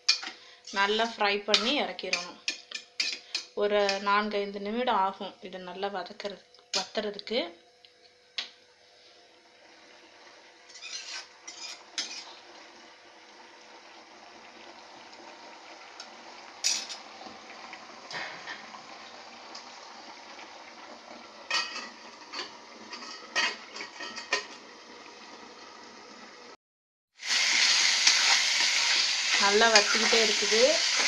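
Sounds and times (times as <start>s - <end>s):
spoon scraping a pan: 0.0s - 4.0s, 10.7s - 12.4s, 16.6s - 17.0s, 21.5s - 24.6s, 27.5s - 31.0s
meat frying in liquid: 9.2s - 26.5s, 27.2s - 31.0s.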